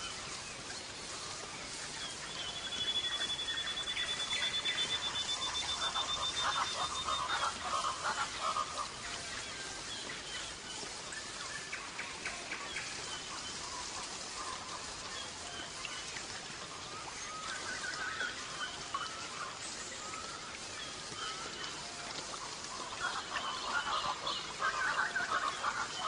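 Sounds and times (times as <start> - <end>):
light hiss: 0.0 - 26.0
goldfinch singing: 2.1 - 7.9.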